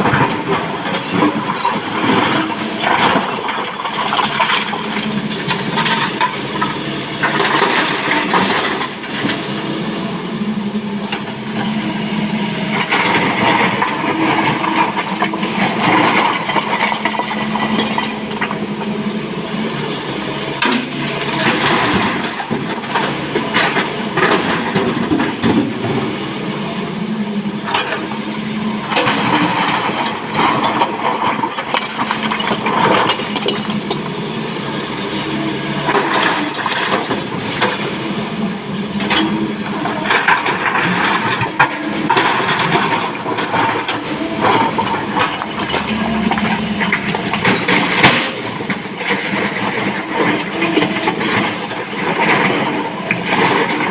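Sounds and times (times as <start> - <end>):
excavator diesel engine running: 0.0 - 53.9
stone clattering and crashing: 44.4 - 47.9.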